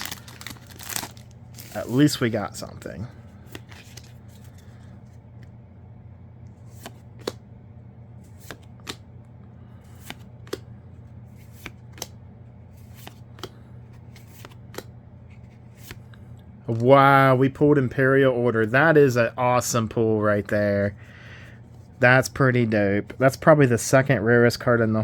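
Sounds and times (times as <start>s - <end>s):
steady low hum: 0.0s - 25.0s
cards snapping and tapping: 6.8s - 7.4s, 8.4s - 9.0s, 10.0s - 10.7s, 11.5s - 12.2s, 14.3s - 14.9s.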